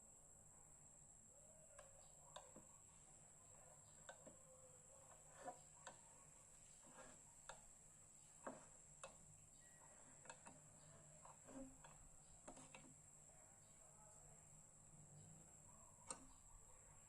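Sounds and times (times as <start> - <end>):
light clicks and taps: 10.2 - 13.0.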